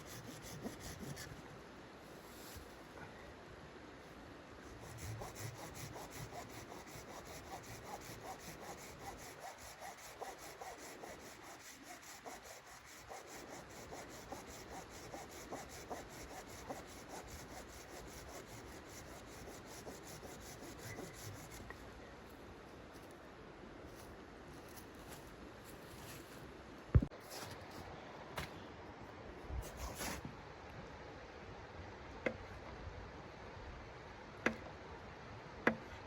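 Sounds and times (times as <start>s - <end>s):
wood being sawn by hand: 4.8s - 21.6s.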